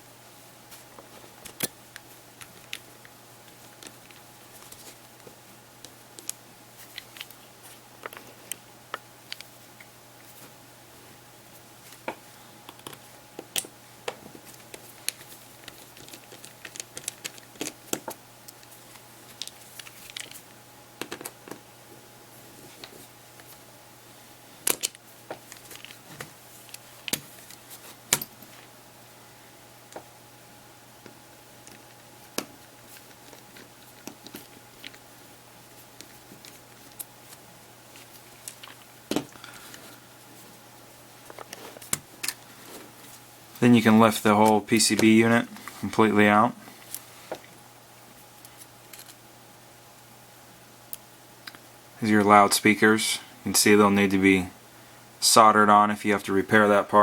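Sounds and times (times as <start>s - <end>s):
tools clicking on device internals: 14.5s - 18.7s.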